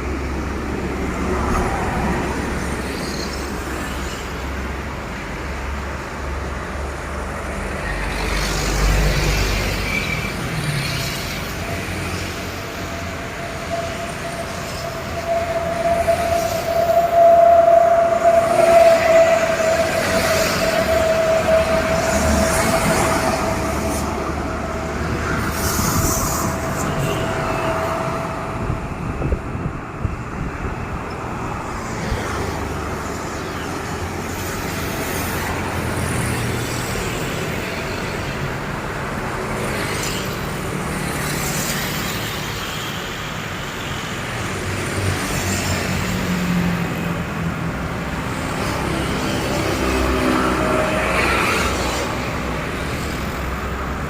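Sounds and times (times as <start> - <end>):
heavy vehicles rumbling past: 0.0 - 54.0
steady high tone: 12.4 - 30.2.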